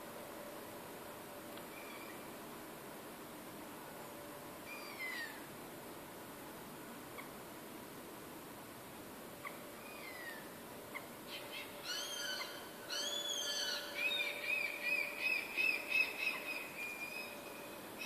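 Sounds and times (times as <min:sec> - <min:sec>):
birds screaming: 0:11.3 - 0:17.4.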